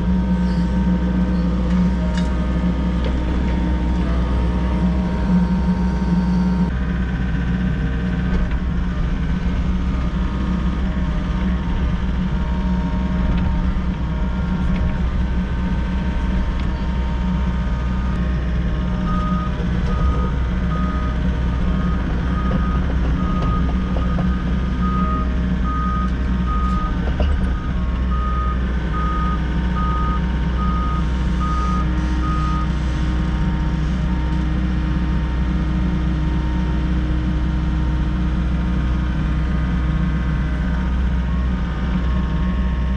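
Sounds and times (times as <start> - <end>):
backup alarm beeping: 0.0 - 6.7
diesel engine running: 0.0 - 42.9.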